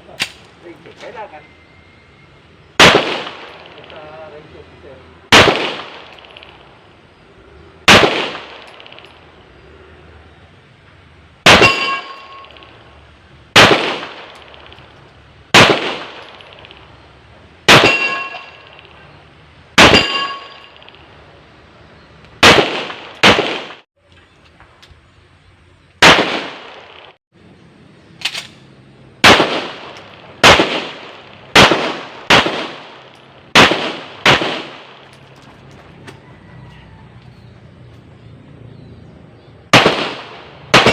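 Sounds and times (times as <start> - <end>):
pistol shots: 2.8 - 4.2, 5.3 - 6.7, 7.8 - 9.3, 11.4 - 12.8, 13.5 - 17.0, 17.6 - 19.0, 19.8 - 21.0, 22.4 - 23.9, 26.0 - 27.2, 29.2 - 35.1, 39.7 - 40.9
short metallic ring: 11.6 - 12.8, 17.8 - 18.9, 19.9 - 21.0.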